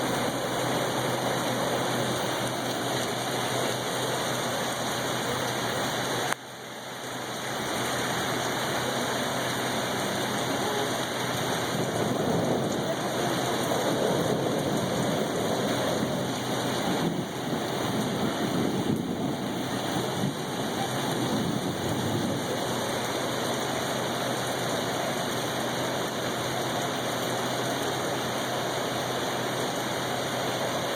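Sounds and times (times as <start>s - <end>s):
steady rain falling: 0.0s - 30.9s.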